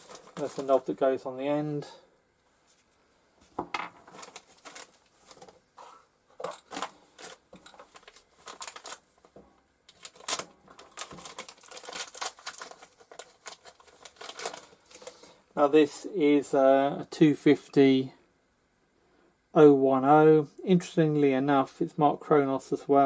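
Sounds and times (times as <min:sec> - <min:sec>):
packaging rustling: 0:00.0 - 0:01.0, 0:04.0 - 0:15.3.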